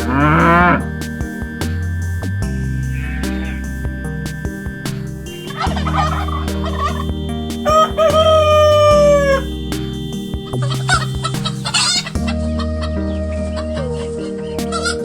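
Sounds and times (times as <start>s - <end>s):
background music: 0.0s - 15.0s
chicken clucking: 5.5s - 7.0s
rooster crowing: 7.7s - 9.4s.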